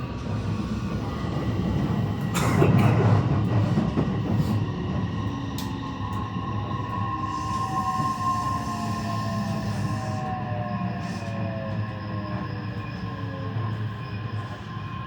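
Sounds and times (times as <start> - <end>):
train rumbling on rails: 0.0 - 15.0
rail joint clicks: 1.8 - 6.3.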